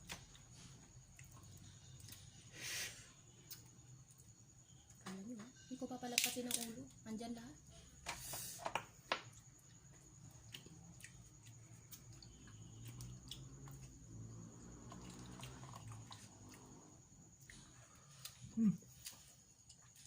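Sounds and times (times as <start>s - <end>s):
wet squishing and dripping: 14.7s - 16.9s.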